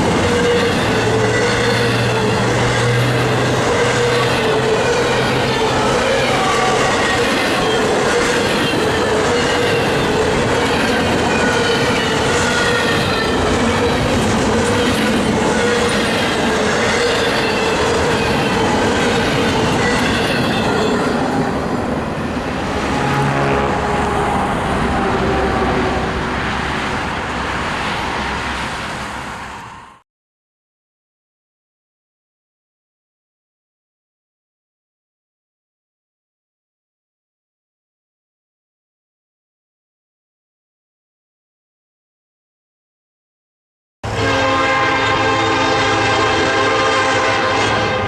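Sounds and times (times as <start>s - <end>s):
wheels clacking on rails: 0.0s - 29.8s
freight train cars rolling by: 0.0s - 30.0s, 44.0s - 48.0s
train wheels squealing: 0.2s - 21.4s.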